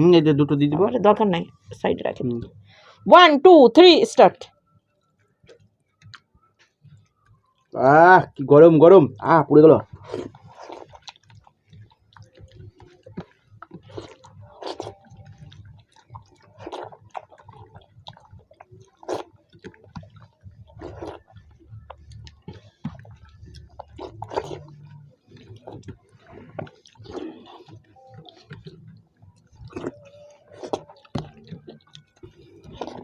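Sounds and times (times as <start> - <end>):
mouth smacks and clicks: 5.4 - 7.8, 9.8 - 33.0
wet chewing: 5.4 - 7.8, 8.9 - 33.0.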